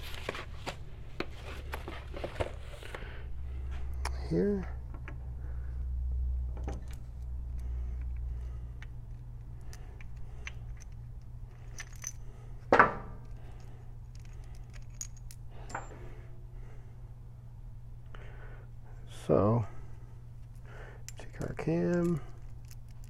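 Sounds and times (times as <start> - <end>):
steady low hum: 0.0 - 23.0
metal engine parts clinking: 9.5 - 12.4, 13.1 - 16.1, 21.0 - 23.0.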